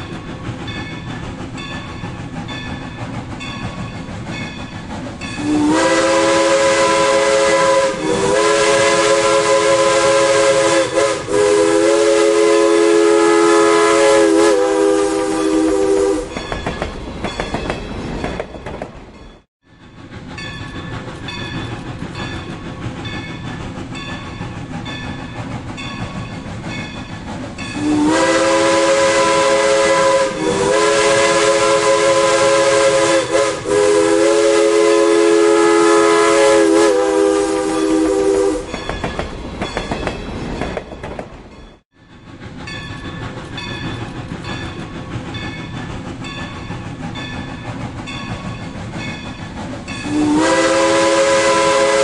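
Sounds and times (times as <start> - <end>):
train rumble and clatter: 0.0 - 52.0
steam locomotive whistle: 5.4 - 16.4, 27.7 - 38.9, 50.0 - 52.0.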